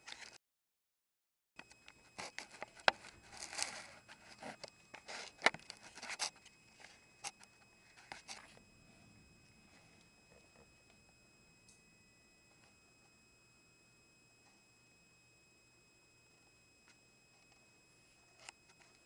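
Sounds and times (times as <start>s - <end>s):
rustling: 2.0s - 10.7s.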